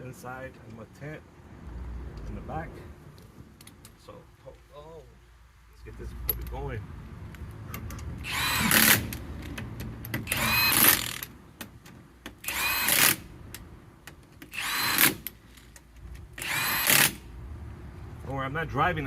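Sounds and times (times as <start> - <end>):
power tool bursts: 8.2 - 9.2, 10.2 - 11.3, 12.4 - 13.3, 14.5 - 15.4, 16.4 - 17.3.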